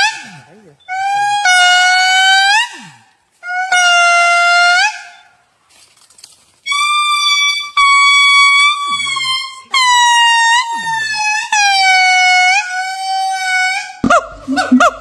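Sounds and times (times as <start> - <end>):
brief rustle: 5.6 - 6.7
monkey calling high-pitched: 6.7 - 15.0.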